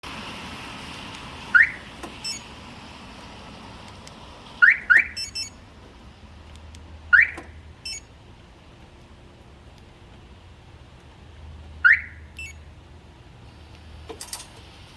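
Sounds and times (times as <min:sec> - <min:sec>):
alarm siren chirps: 0:01.5 - 0:02.5, 0:04.6 - 0:05.6, 0:07.1 - 0:08.1, 0:11.8 - 0:12.6
faint electronic beep: 0:07.2 - 0:08.1.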